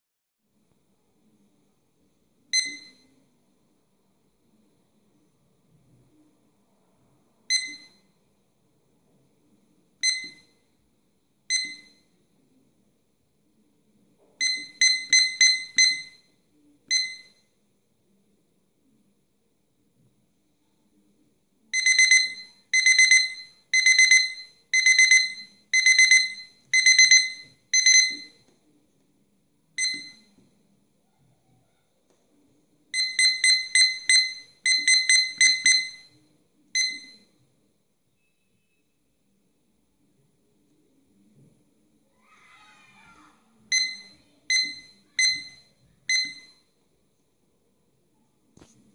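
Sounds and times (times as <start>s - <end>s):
kitchen timer alarm beeping: 2.5s - 3.1s, 7.5s - 8.1s, 10.0s - 10.6s, 11.5s - 12.1s, 14.4s - 16.3s, 16.9s - 17.5s, 21.7s - 28.4s, 29.8s - 30.4s, 32.9s - 36.2s, 36.8s - 37.3s, 43.7s - 46.7s.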